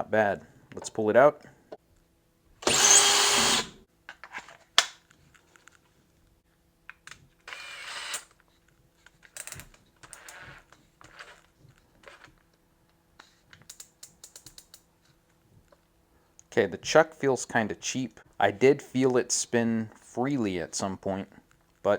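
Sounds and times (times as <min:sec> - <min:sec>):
drill chuck clicking and ratcheting: 0:02.6 - 0:03.8.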